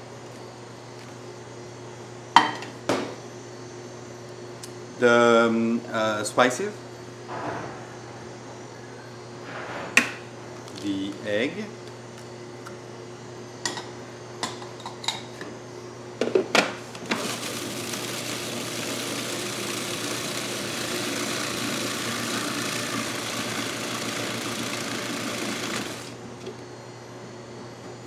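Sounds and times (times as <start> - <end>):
food processor motor running: 17.0 - 26.6.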